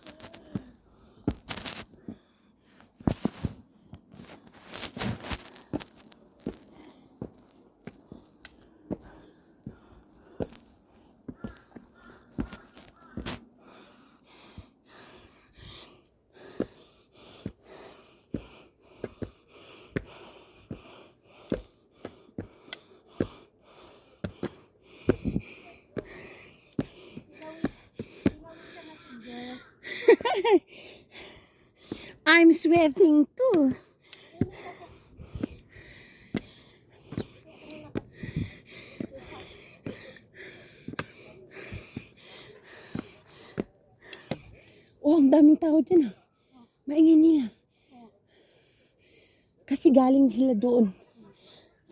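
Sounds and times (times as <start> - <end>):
footsteps on steps: 0.0 - 2.2, 2.9 - 13.5, 16.4 - 29.0, 31.2 - 44.6
heavy breathing: 6.4 - 12.5, 13.4 - 30.0, 30.6 - 32.3, 33.5 - 45.0, 50.8 - 51.9.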